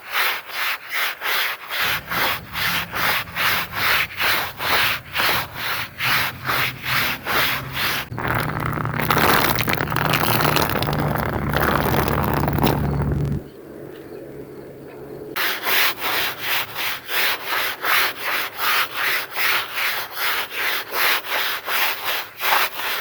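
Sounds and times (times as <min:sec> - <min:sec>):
scrubbing machine noise: 0:01.8 - 0:13.4
low motor hum: 0:01.9 - 0:13.4.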